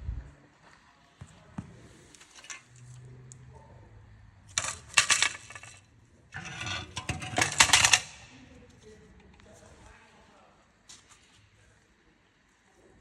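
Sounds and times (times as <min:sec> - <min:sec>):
metal tools clinking and clattering: 0:04.5 - 0:05.8, 0:06.4 - 0:08.3.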